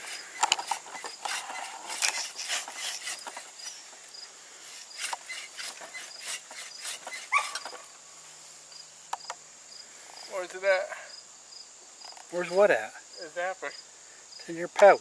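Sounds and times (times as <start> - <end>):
insects chirping: 0.0 - 15.0
dog whimpering: 7.3 - 7.7.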